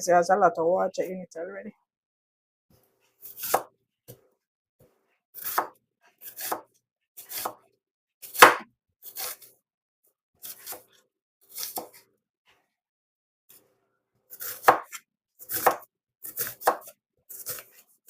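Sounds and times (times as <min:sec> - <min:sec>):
knife chopping on cutting board: 0:03.2 - 0:04.2, 0:05.4 - 0:07.6, 0:08.2 - 0:09.4, 0:10.4 - 0:10.8, 0:11.5 - 0:12.0, 0:14.4 - 0:17.7.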